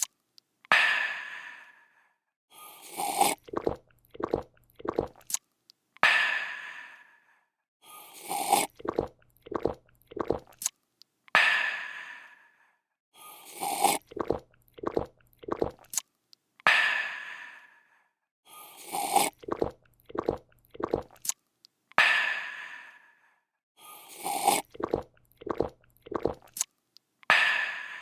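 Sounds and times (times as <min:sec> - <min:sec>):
person slurping a drink: 0:02.7 - 0:05.4, 0:08.0 - 0:10.7, 0:13.3 - 0:16.0, 0:18.6 - 0:21.3, 0:23.9 - 0:26.7
gulping: 0:02.9 - 0:05.3, 0:08.2 - 0:10.6, 0:13.6 - 0:15.9, 0:18.8 - 0:21.2, 0:24.1 - 0:26.6.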